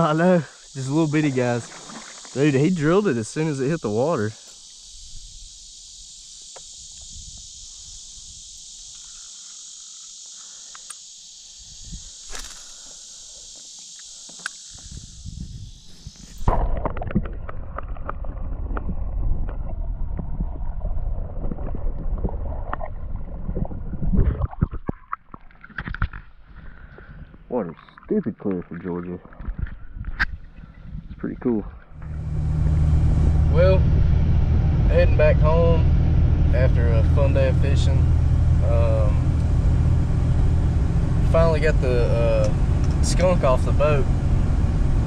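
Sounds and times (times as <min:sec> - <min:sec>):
insects chirping: 0:00.0 - 0:45.0
low rumble with small knocks: 0:32.0 - 0:45.0.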